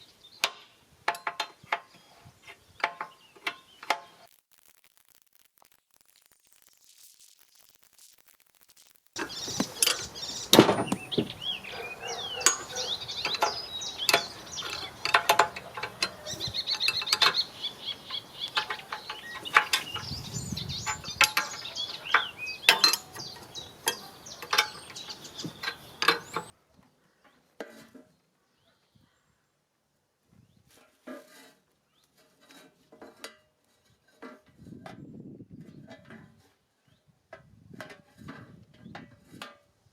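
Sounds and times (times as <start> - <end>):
birds singing: 9.2 - 26.5
hand tools clinking on metal: 9.8 - 17.5, 20.8 - 26.5.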